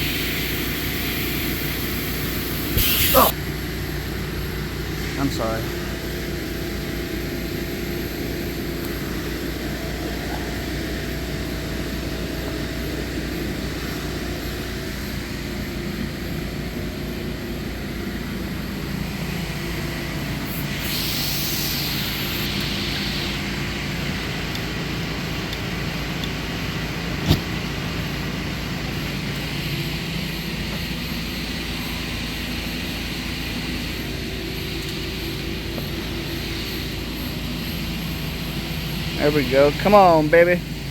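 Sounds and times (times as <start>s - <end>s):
air hissing: 0.0s - 3.4s, 17.6s - 40.9s
air compressor running: 0.0s - 40.9s
sharp click: 2.7s - 3.3s.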